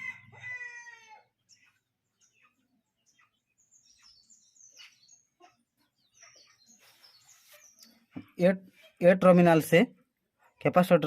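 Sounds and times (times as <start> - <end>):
rooster crowing: 0.0 - 1.3
small birds chirping: 0.0 - 11.0.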